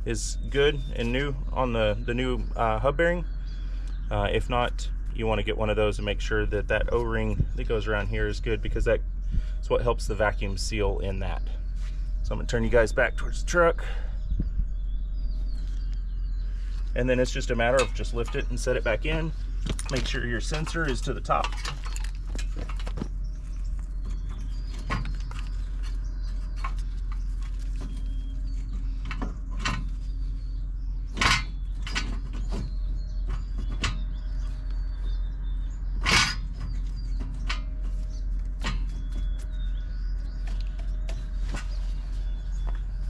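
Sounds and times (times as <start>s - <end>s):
steady low hum: 0.0s - 43.0s
metal clicks and clunks: 17.6s - 18.7s, 19.6s - 23.2s, 31.1s - 34.2s, 36.0s - 39.5s.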